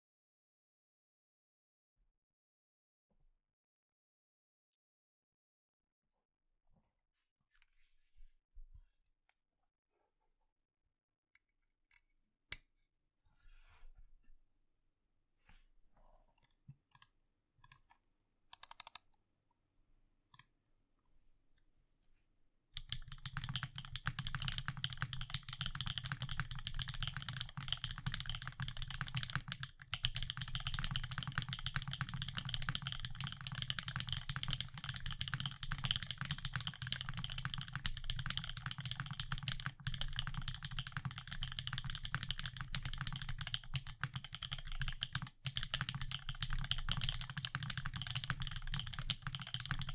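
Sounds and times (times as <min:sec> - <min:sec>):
typing on mechanical keyboard: 0:18.6 - 0:19.0, 0:22.8 - 0:49.9.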